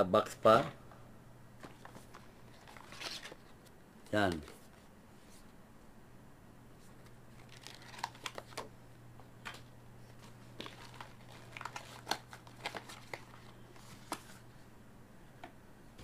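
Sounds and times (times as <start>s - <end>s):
packaging crinkling: 1.6s - 3.5s, 7.3s - 8.7s, 9.5s - 14.4s.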